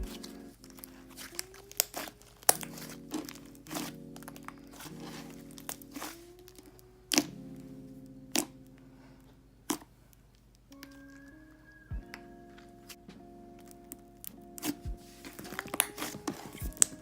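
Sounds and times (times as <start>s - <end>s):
slime popping and crackling: 0.0s - 7.3s, 8.3s - 8.5s, 14.6s - 17.0s
background music: 0.0s - 9.8s, 10.7s - 17.0s.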